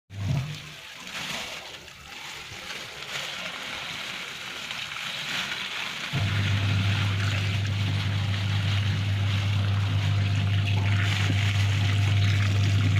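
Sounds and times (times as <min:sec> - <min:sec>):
water running and splashing: 0:00.1 - 0:12.9
low motor hum: 0:06.2 - 0:12.9.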